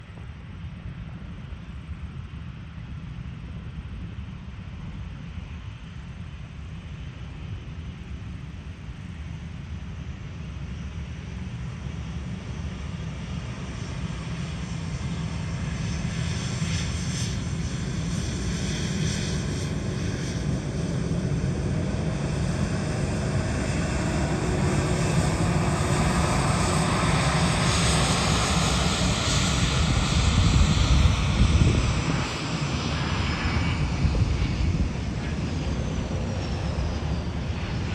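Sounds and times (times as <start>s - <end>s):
jet approaching: 13.8s - 37.9s.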